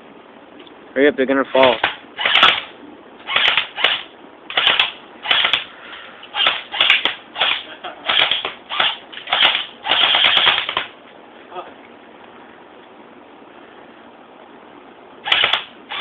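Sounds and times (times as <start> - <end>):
airsoft rifle firing bursts: 1.6 - 2.7, 3.3 - 5.7, 6.3 - 10.9, 15.2 - 16.0.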